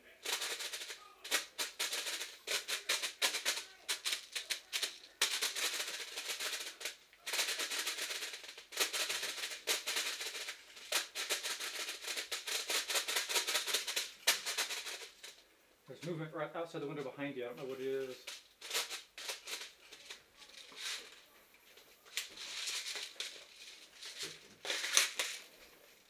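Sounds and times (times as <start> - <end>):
plastic clicking and rattling: 18.1 - 26.0.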